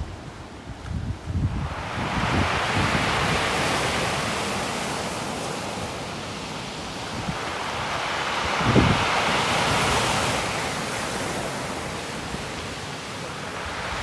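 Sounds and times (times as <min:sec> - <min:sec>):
wind buffeting microphone: 0:00.0 - 0:05.0, 0:06.9 - 0:11.2
waves crashing on shore: 0:01.4 - 0:14.0.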